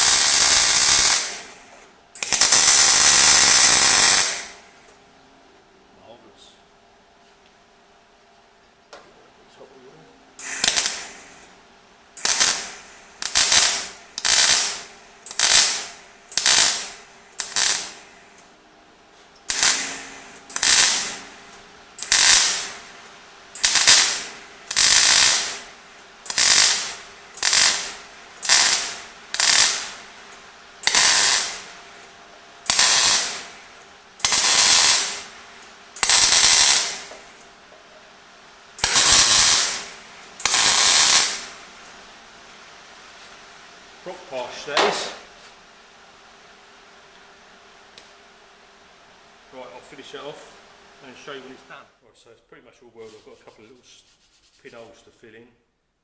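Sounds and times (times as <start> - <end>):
crackling spot welds: 0.0 - 5.0, 10.4 - 18.6, 19.2 - 37.6, 38.7 - 43.5.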